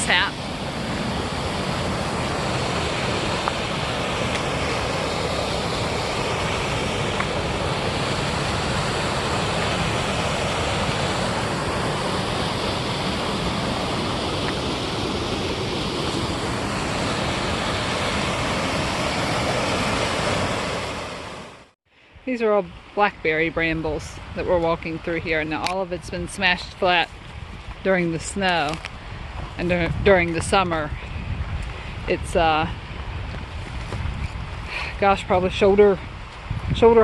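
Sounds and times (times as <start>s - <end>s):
waterfall rushing: 0.0s - 21.6s.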